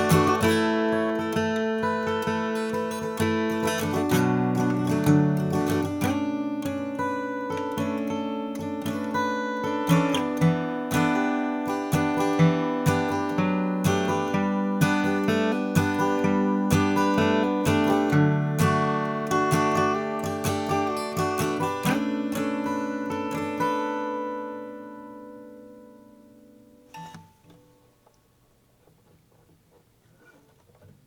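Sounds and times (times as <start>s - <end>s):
guitar chord ringing: 0.0s - 6.2s
acoustic guitar picking: 0.0s - 31.0s.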